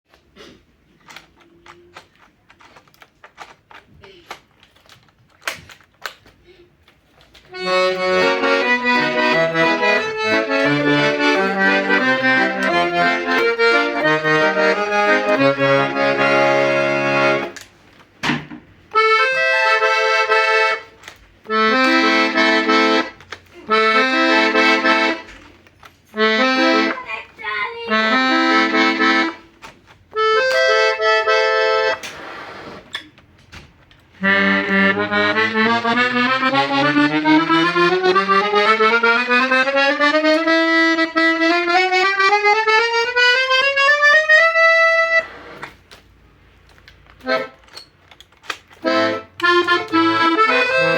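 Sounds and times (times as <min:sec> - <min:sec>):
accordion playing chords: 0:07.5 - 0:17.7, 0:18.8 - 0:32.8, 0:34.1 - 0:45.9, 0:47.2 - 0:50.9.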